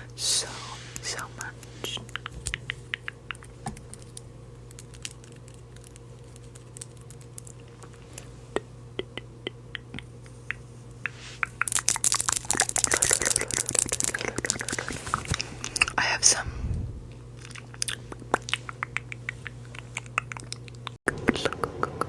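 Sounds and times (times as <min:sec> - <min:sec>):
low electrical hum: 0:00.0 - 0:22.0
snack packet crinkling: 0:03.5 - 0:08.3, 0:11.6 - 0:16.0.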